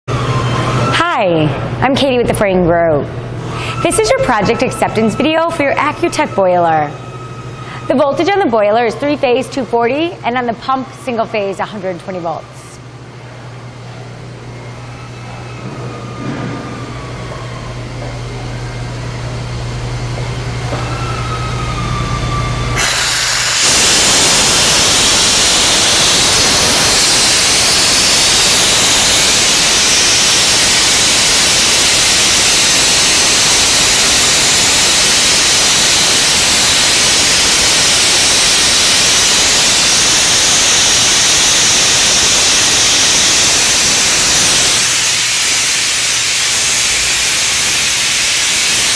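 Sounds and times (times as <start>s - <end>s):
steam boiler humming: 3.0s - 48.9s
steam venting hiss: 22.8s - 48.9s.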